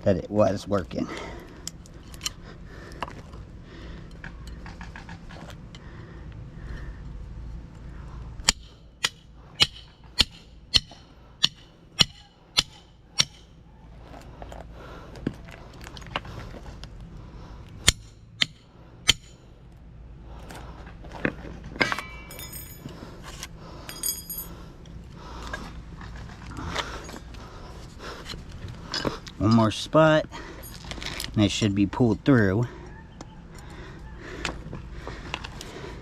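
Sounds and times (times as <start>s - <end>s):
hammer striking metal: 8.4s - 13.5s, 17.8s - 19.4s, 21.8s - 22.9s
handling and scraping: 12.6s - 18.0s, 20.3s - 32.1s.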